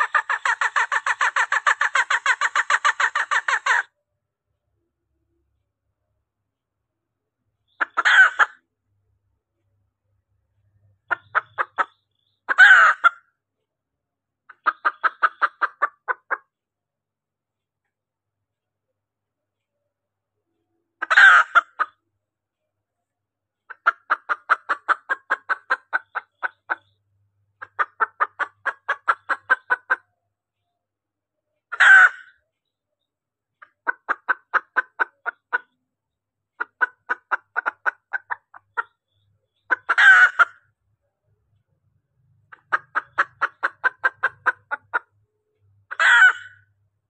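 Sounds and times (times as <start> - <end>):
hen clucking rapidly: 0.0 - 3.9, 7.7 - 8.6, 11.0 - 13.3, 14.5 - 16.5, 21.0 - 22.0, 23.7 - 27.0, 27.6 - 30.1, 31.7 - 32.4, 33.6 - 35.8, 36.6 - 40.7, 42.5 - 45.2, 45.9 - 46.7.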